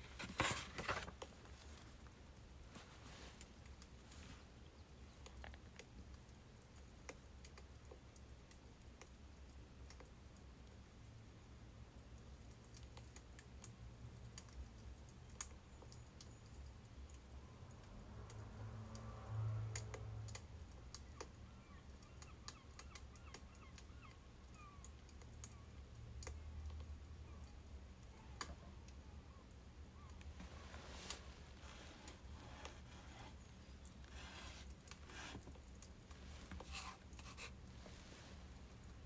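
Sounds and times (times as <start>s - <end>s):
low steady hum: 0.0s - 39.0s.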